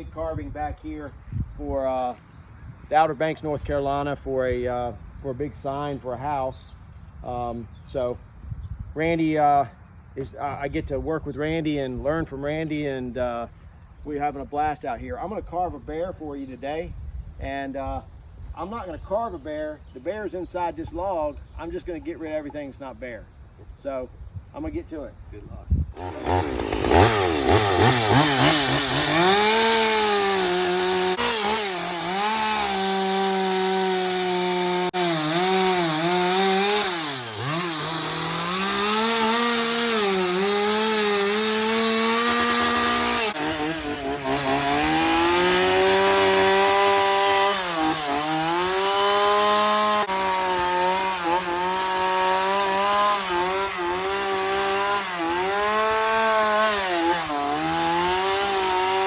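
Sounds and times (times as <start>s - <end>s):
chainsaw cutting wood: 25.9s - 59.0s.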